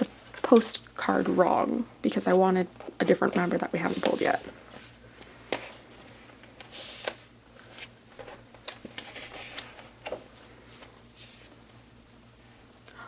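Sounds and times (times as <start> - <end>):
paper rustling: 0.0 - 11.6
paper sliding hiss: 6.7 - 7.3.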